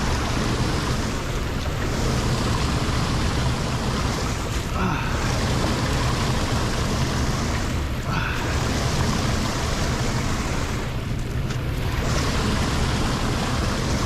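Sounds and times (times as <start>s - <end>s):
low rumble: 0.0s - 14.0s
water rushing into drain grate: 0.0s - 14.0s.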